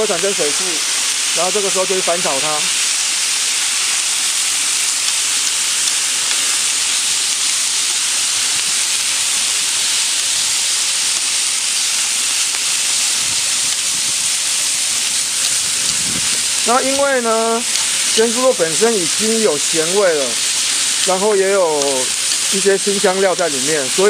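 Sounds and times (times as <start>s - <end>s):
cabbage sizzling on a griddle: 0.0s - 24.0s.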